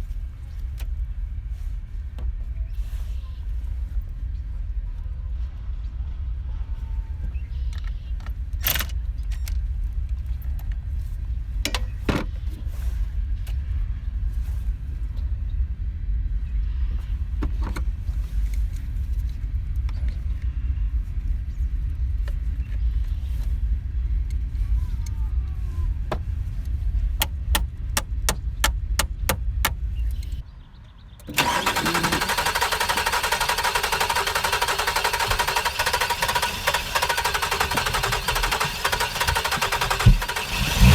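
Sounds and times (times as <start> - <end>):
car engine starting and running: 27.1 - 30.4, 31.2 - 40.9
sharp tool clicks: 27.2 - 30.4.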